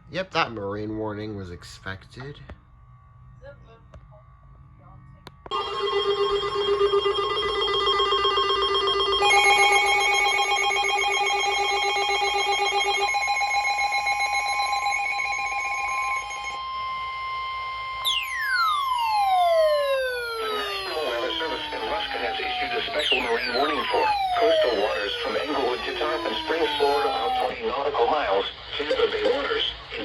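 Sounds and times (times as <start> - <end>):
electronic beat of pulsing tones: 9.2 - 16.6, 18.0 - 27.5.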